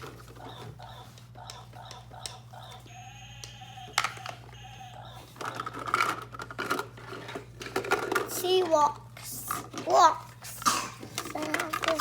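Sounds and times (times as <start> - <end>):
toy pieces clicking and clattering: 5.2 - 8.8, 11.2 - 12.0.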